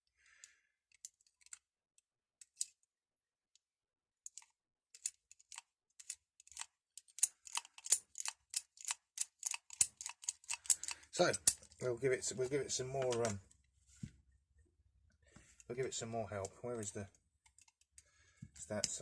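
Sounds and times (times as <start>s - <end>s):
key clicking in padlock: 4.3s - 11.7s.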